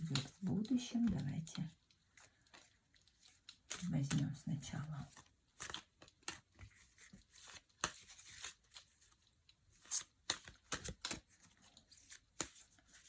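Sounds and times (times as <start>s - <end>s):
cards being shuffled: 2.1s - 4.3s, 5.0s - 13.0s.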